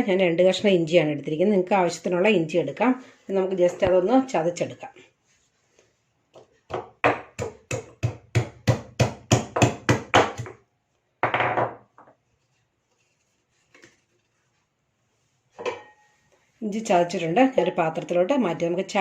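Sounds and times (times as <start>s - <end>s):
ginger being pounded: 6.7s - 10.6s.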